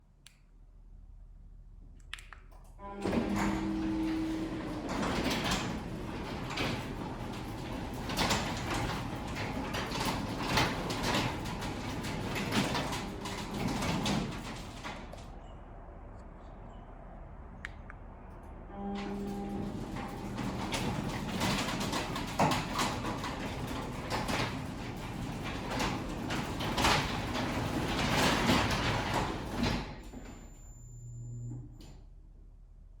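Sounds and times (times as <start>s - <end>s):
garage door rattling on tracks: 3.0s - 15.4s, 18.7s - 30.5s.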